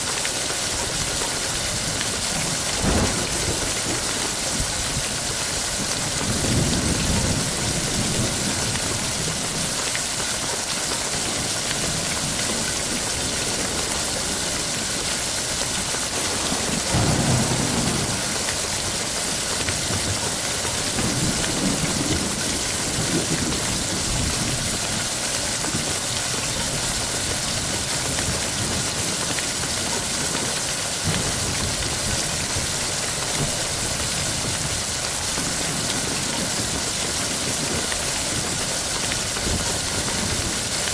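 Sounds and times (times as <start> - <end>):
heavy rain: 0.0 - 40.9
thunder rumbling: 2.3 - 7.6, 16.0 - 24.6.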